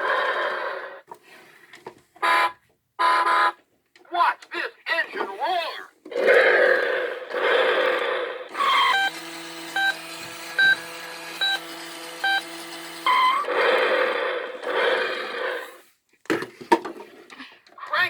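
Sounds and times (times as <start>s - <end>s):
buzzy electronic tone with beeps: 8.6s - 13.5s.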